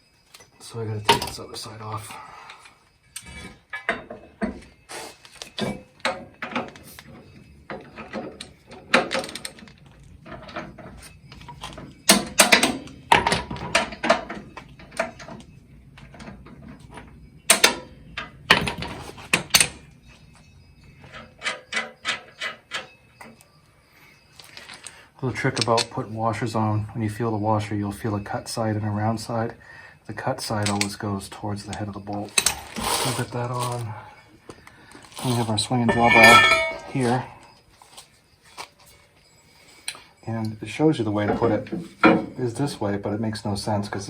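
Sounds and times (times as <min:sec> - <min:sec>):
metal clanks: 0:03.1 - 0:04.9, 0:05.5 - 0:23.4, 0:35.8 - 0:37.5, 0:41.2 - 0:42.4.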